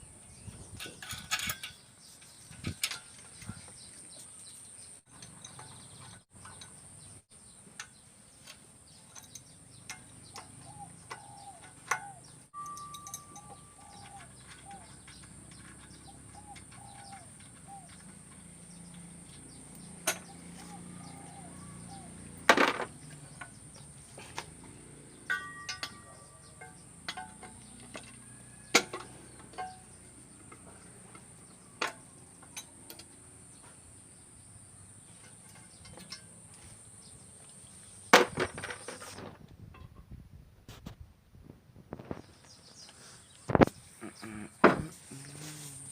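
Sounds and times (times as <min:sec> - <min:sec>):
hand tools clicking on metal: 0:07.8 - 0:20.5, 0:24.2 - 0:33.1.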